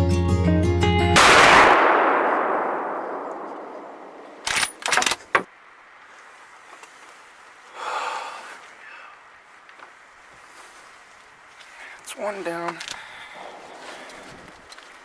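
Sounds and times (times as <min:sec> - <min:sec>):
rifle shot echo: 0:01.2 - 0:04.9
rifle action metallic clacks: 0:03.4 - 0:05.5.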